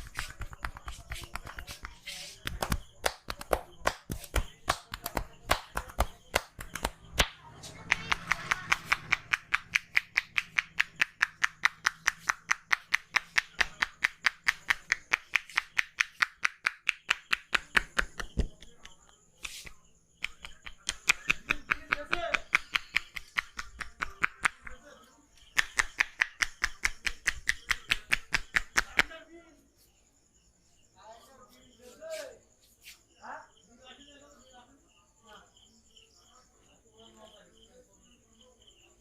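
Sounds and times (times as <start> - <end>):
hands tapping a head: 0.0 - 24.9, 25.5 - 29.2.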